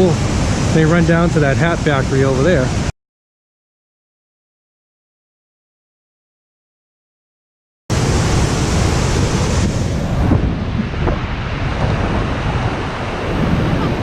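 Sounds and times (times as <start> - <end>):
waterfall rushing: 0.0 - 2.9, 7.9 - 14.0.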